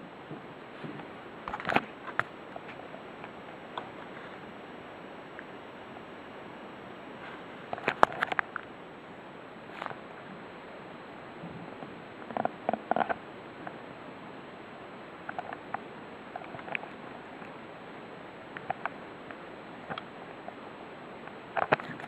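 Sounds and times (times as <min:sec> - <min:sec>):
steady hiss: 0:00.0 - 0:22.0
clicks and knocks of handling: 0:00.3 - 0:03.9.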